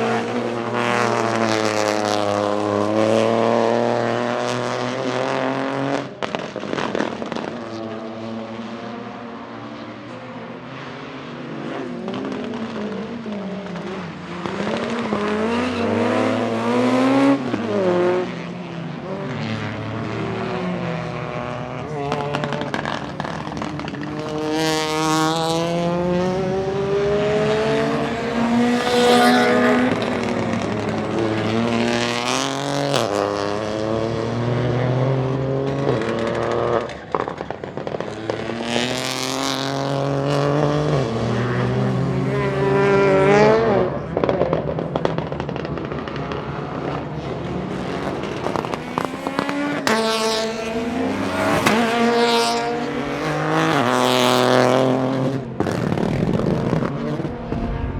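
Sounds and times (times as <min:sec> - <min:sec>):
exhaust crackles and pops: 0:06.0 - 0:08.3, 0:21.4 - 0:25.6, 0:29.8 - 0:33.7, 0:35.5 - 0:39.2, 0:44.0 - 0:50.0, 0:55.4 - 0:57.9
car engine accelerating through gears: 0:10.8 - 0:37.0.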